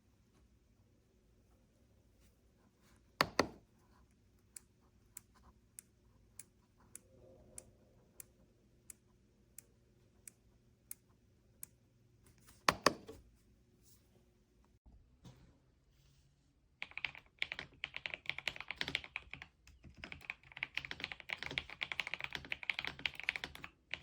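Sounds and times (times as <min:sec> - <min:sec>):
mechanical keyboard keystrokes: 0:16.8 - 0:24.0.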